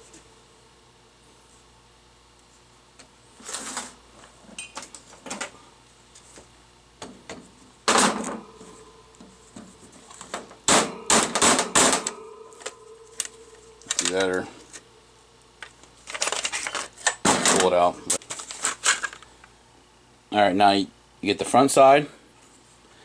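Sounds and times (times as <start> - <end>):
sharp metallic knocks and clatters: 10.7 - 13.3.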